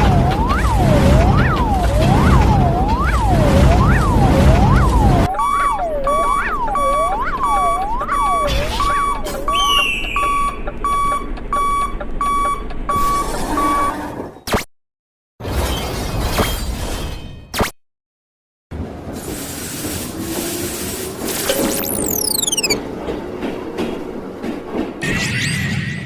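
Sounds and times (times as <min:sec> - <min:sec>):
passing train rumble: 0:00.0 - 0:05.3
siren-like crossing tone: 0:00.0 - 0:10.4, 0:21.5 - 0:22.8.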